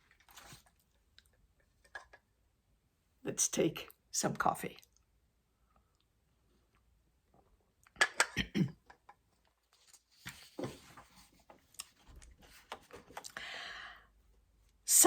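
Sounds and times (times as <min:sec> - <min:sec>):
soft rustling: 0:09.6 - 0:13.2.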